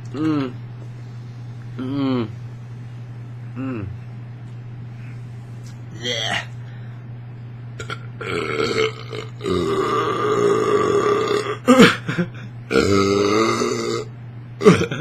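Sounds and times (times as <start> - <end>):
man belching loudly: 6.0 - 6.5, 7.8 - 12.0, 12.7 - 15.0.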